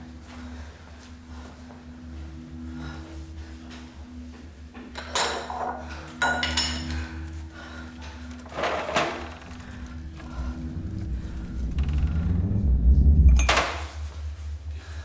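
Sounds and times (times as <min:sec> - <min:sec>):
cups and dishes clinking: 0:05.0 - 0:07.1
low steady hum: 0:05.9 - 0:15.0.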